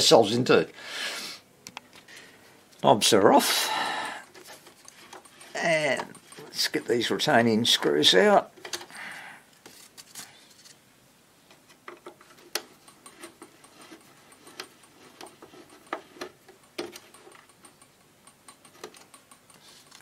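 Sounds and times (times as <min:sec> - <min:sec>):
screwdriver clicking: 0:11.9 - 0:20.0.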